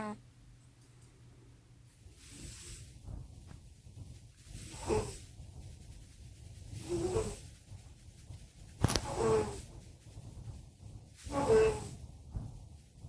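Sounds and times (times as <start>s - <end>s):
cats snoring: 2.1s - 5.6s, 6.6s - 7.7s, 8.8s - 9.8s, 11.2s - 12.7s.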